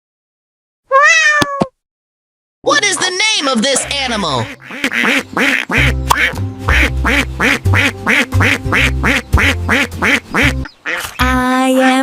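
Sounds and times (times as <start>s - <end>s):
duck quacking: 2.9s - 11.3s
background music with bass line: 3.9s - 11.5s.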